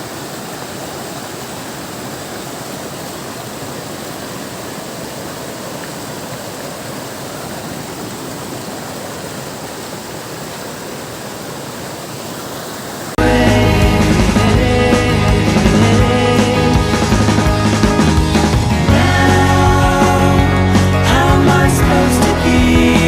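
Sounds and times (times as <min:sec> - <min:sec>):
hot spring water boiling: 0:00.0 - 0:13.2.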